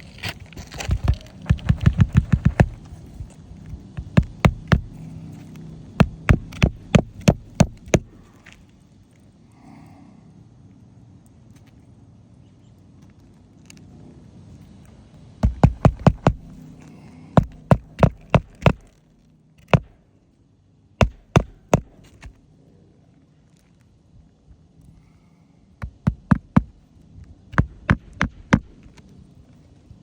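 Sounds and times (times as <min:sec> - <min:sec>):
hammer driving nails: 0:00.8 - 0:02.9, 0:04.0 - 0:05.0, 0:06.0 - 0:08.2, 0:15.4 - 0:16.6, 0:17.4 - 0:19.0, 0:19.6 - 0:20.0, 0:21.0 - 0:22.4, 0:25.8 - 0:26.8, 0:27.5 - 0:29.0.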